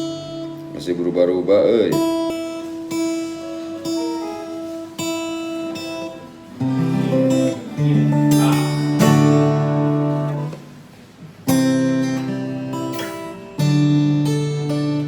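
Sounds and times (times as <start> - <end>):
guitar chords strummed: 0.0 - 0.8, 1.9 - 15.0
guitar notes plucked: 2.0 - 15.0.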